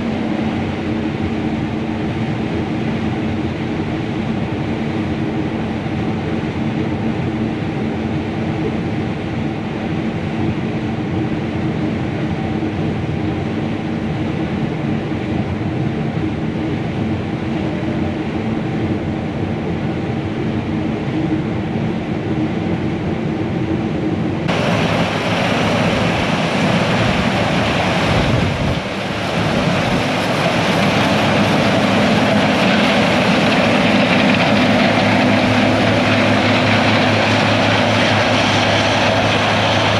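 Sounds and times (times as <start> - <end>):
diesel engine drone: 14.1 - 39.9
loud rushing machine noise: 24.5 - 39.9.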